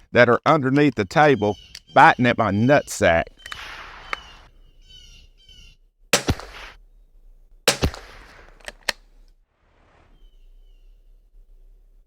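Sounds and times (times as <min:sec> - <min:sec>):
rifle shots: 0:06.2 - 0:06.8, 0:07.7 - 0:09.0.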